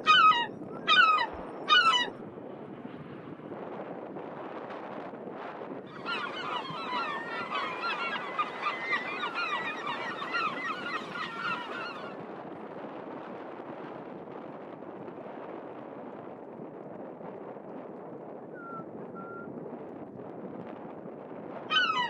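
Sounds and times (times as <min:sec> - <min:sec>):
seagulls calling: 0:00.0 - 0:02.1, 0:05.9 - 0:12.2, 0:21.7 - 0:22.0.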